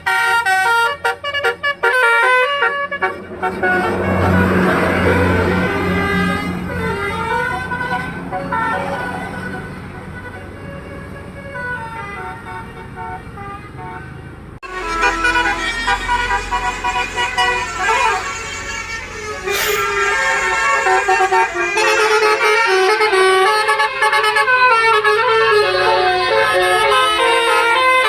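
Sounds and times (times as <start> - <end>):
musical air horn tune: 0.0 - 10.4, 14.6 - 28.0
low engine rumble: 14.3 - 23.8.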